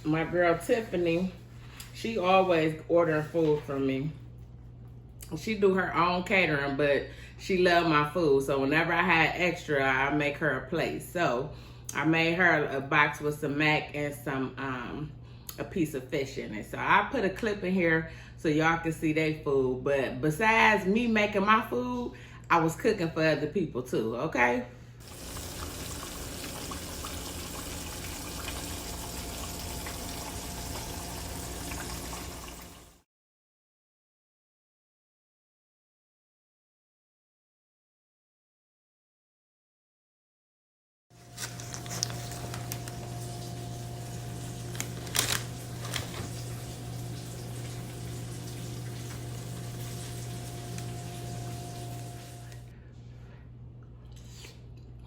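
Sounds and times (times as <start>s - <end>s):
running water rushing: 25.0s - 33.0s, 41.3s - 52.6s.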